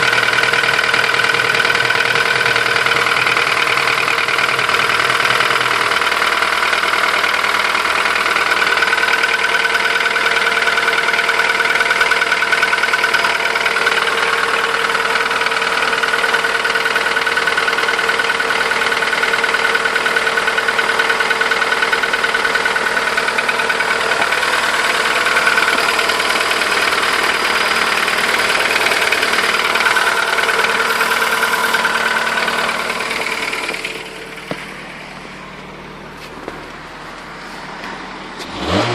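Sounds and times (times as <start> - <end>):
car engine idling with knocking: 0.0 - 38.9.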